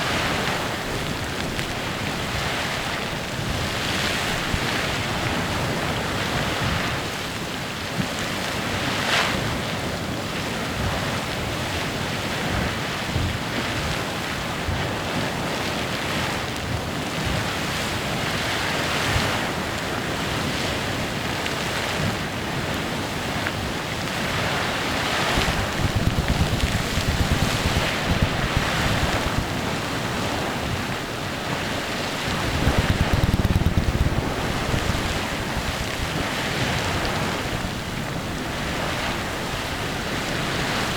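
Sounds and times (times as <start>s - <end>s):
geyser hissing and splashing: 0.0s - 40.9s
deep rumble: 25.4s - 36.2s.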